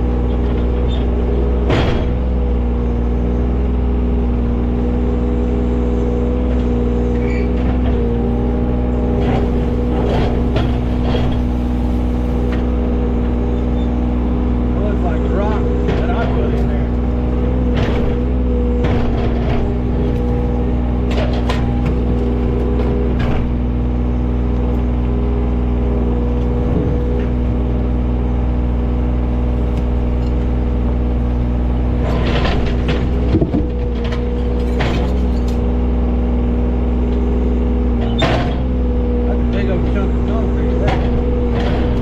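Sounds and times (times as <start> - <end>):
excavator diesel engine running: 0.0 - 42.0.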